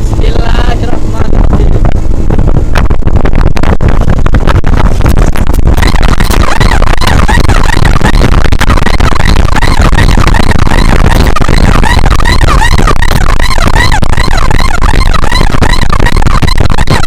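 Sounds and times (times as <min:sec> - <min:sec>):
warbling high-pitched tones: 0:00.0 - 0:17.0
wind buffeting: 0:00.0 - 0:17.0.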